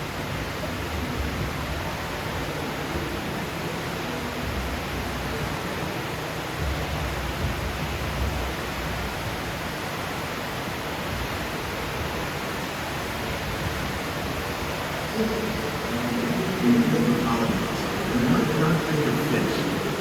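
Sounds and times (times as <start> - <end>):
running water: 0.0 - 20.0
steady rushing ambience: 13.7 - 20.0.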